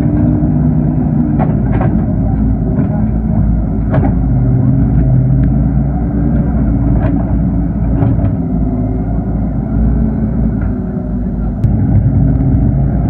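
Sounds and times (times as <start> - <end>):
excavator engine running: 0.0 - 13.0
short knocks: 1.3 - 5.6.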